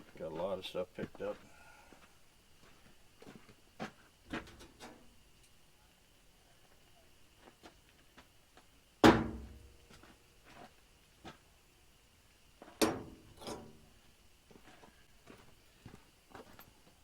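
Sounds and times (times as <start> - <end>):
metal grill parts clanking: 9.0 - 9.7, 12.8 - 13.9.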